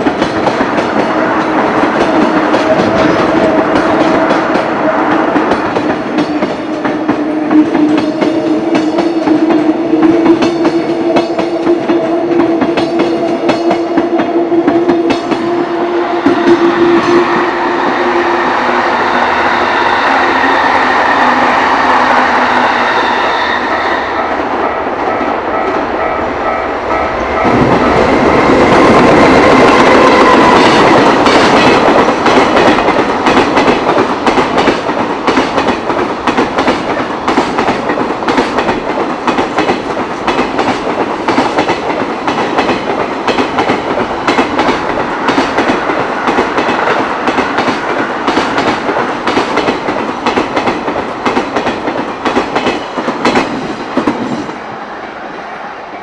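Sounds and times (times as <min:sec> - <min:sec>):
freight train wheels clattering: 0:00.0 - 0:54.6.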